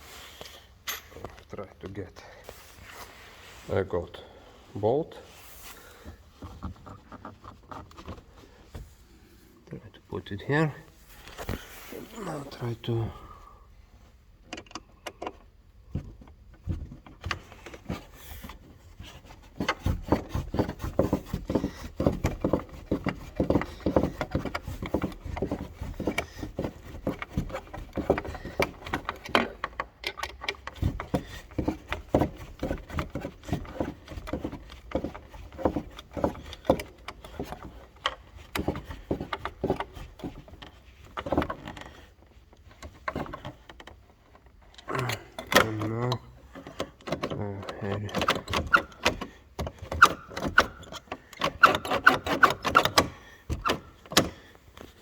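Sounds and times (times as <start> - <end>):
metal and plastic clicking: 22.3 - 39.9.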